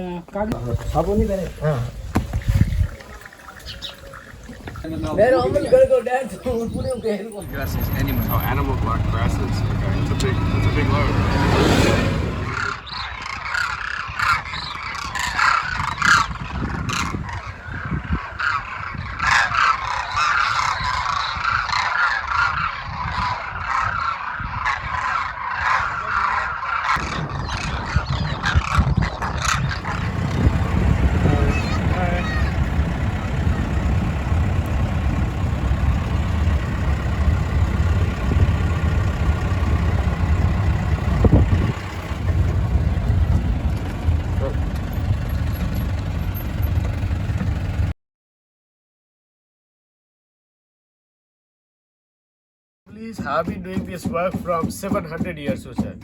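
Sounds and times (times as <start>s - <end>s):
flock of birds honking: 2.9s - 42.8s
low rumble: 7.4s - 12.9s, 27.0s - 47.9s.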